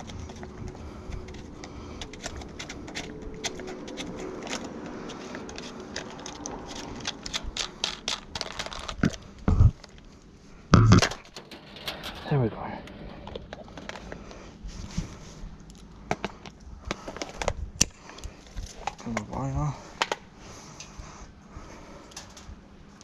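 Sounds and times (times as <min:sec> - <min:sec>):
plastic and metal parts rattling: 0:00.0 - 0:09.4, 0:10.8 - 0:14.4
heavy thumps: 0:10.8 - 0:13.7.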